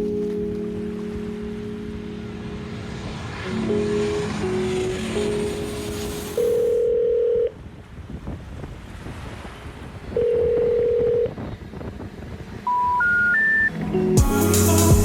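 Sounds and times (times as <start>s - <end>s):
steady rushing background noise: 0.0s - 14.4s
long low telephone beeps: 6.5s - 7.6s, 10.2s - 11.4s, 12.7s - 13.8s
short rising telephone beeps: 12.7s - 13.8s.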